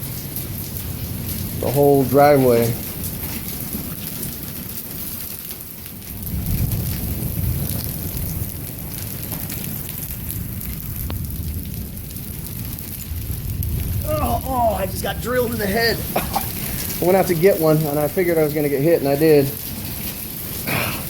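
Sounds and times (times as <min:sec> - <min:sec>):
hailstones clicking: 0:00.0 - 0:21.0
torrential rain and hail: 0:00.0 - 0:21.0
low rumble of thunder: 0:06.1 - 0:21.0.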